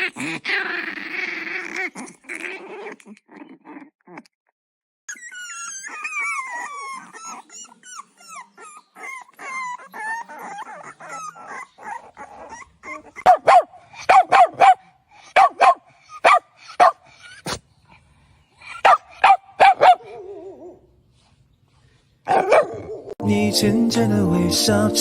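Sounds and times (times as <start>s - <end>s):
dog whining and yelping: 0.0s - 4.2s, 5.1s - 17.6s, 18.6s - 20.8s, 22.3s - 23.2s
dog barking: 13.2s - 17.0s, 18.8s - 20.3s, 22.3s - 23.1s.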